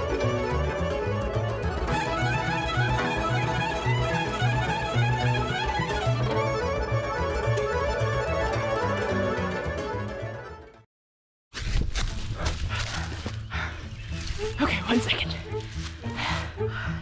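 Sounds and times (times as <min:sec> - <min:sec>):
lively fiddle music: 0:00.0 - 0:10.8, 0:14.0 - 0:17.0.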